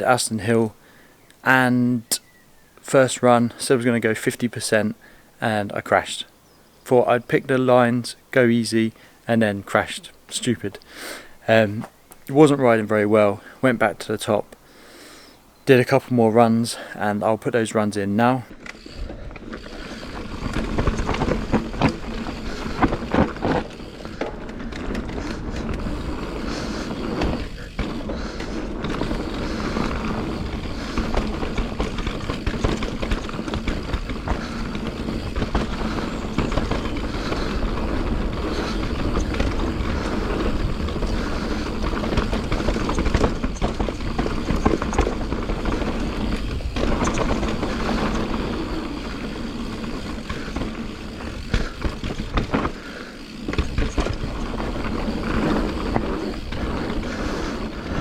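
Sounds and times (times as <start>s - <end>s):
bike tyres rolling over dirt: 0.0s - 58.0s
bike chain and frame clattering: 18.5s - 58.0s.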